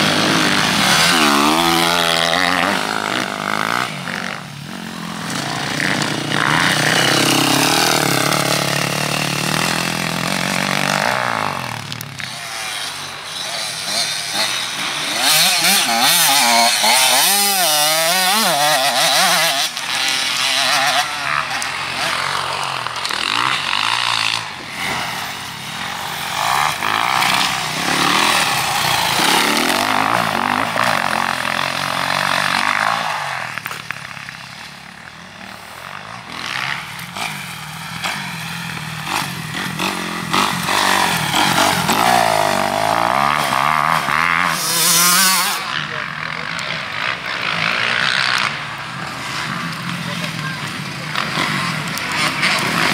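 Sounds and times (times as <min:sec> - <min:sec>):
motocross bike engine revving: 0:00.0 - 0:52.9.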